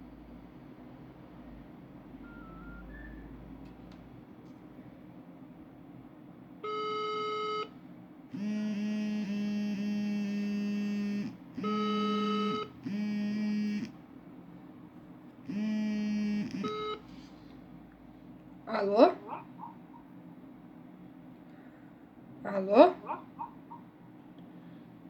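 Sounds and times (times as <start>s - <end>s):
phone call tones: 2.2s - 3.2s, 6.6s - 7.7s, 8.3s - 13.9s, 15.5s - 17.2s.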